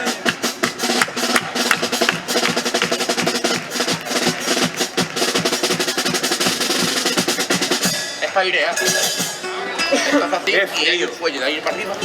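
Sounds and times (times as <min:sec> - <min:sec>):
snare drum quick rhythm: 0:00.0 - 0:08.0
held instrument notes: 0:00.8 - 0:11.4.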